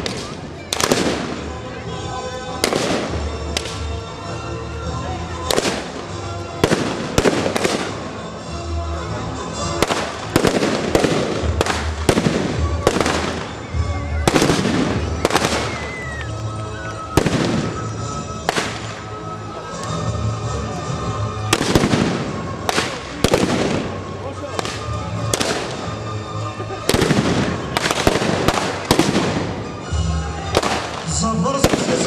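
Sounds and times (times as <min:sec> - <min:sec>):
background music: 0:00.0 - 0:32.0
blank rifle shots: 0:21.6 - 0:23.9, 0:26.9 - 0:29.5.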